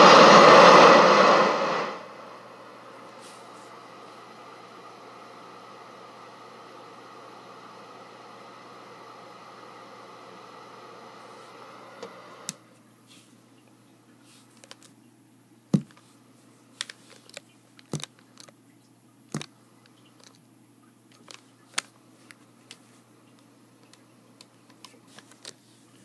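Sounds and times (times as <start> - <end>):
low steady hum: 0.0 - 26.0
clicks and knocks of handling gear: 21.1 - 22.8.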